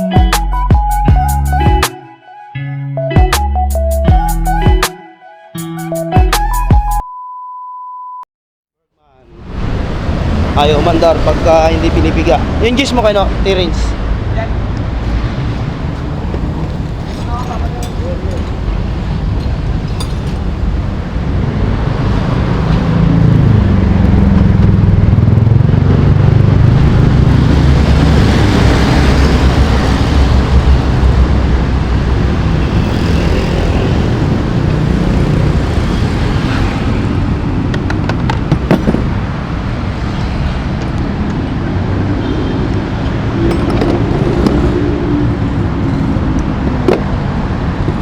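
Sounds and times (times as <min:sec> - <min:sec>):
scooter engine revving: 0:21.8 - 0:39.3.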